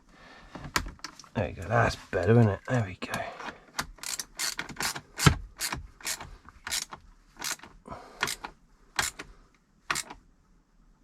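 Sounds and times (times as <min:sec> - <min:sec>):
ratchet spanner strokes: 0:04.0 - 0:07.6.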